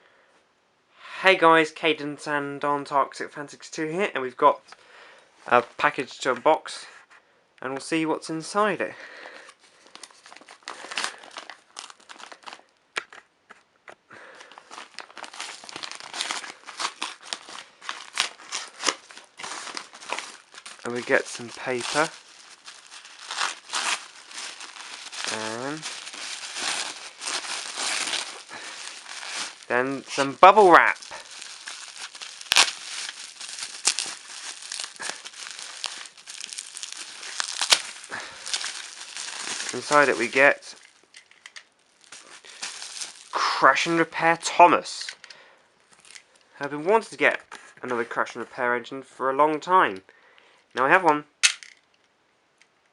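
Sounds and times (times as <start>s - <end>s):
packaging crinkling and rustling: 9.2s - 45.3s, 45.9s - 46.4s.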